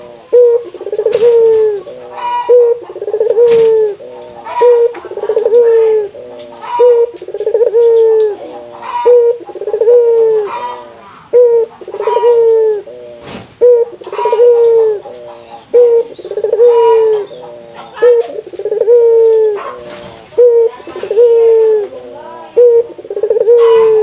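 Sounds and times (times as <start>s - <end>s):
dove cooing: 0.0s - 24.0s.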